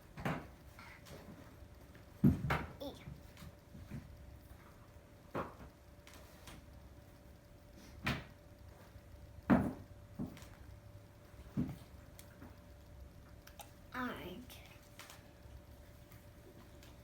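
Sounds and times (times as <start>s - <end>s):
knocks of things being handled: 0.0s - 0.6s, 1.9s - 4.2s, 5.3s - 5.8s, 9.4s - 10.5s, 11.4s - 12.6s.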